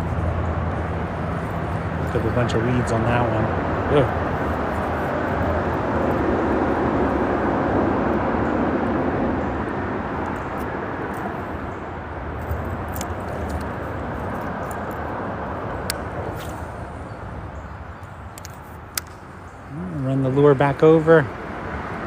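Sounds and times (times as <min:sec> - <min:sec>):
freeway traffic rushing: 0:00.0 - 0:22.0.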